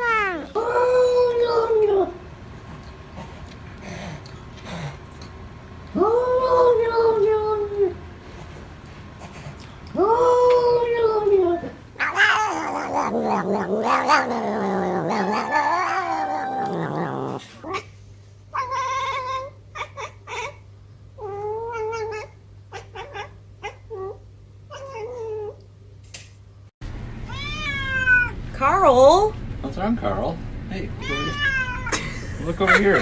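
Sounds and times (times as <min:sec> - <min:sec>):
cats yowling: 0:10.0 - 0:17.9, 0:18.5 - 0:20.6, 0:21.2 - 0:25.6, 0:27.3 - 0:28.4, 0:31.0 - 0:32.0
cat meowing: 0:12.0 - 0:17.8, 0:21.2 - 0:25.6, 0:27.3 - 0:28.4, 0:31.0 - 0:31.9.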